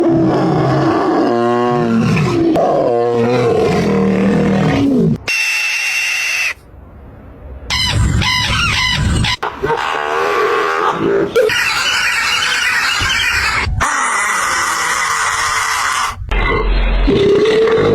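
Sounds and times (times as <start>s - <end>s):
fast repeating animal call: 5.2s - 6.6s, 7.7s - 16.2s.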